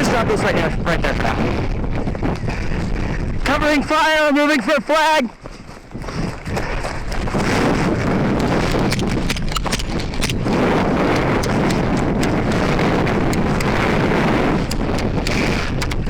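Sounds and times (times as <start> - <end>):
wind on microphone: 0.0 - 16.0
footsteps running: 1.8 - 16.0
gear rattling: 8.4 - 12.6.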